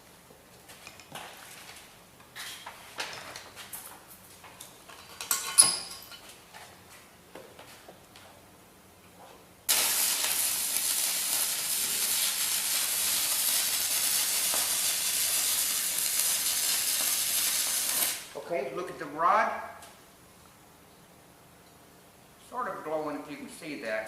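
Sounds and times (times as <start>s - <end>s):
welding arc hissing: 9.7s - 18.4s.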